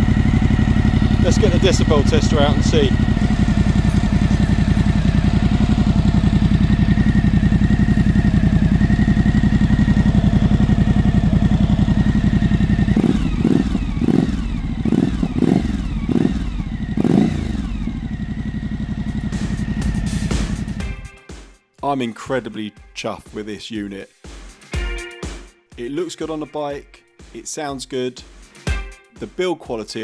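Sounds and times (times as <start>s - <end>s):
engine revving: 0.0s - 21.0s
motorcycle engine idling: 0.0s - 21.3s, 28.7s - 29.0s.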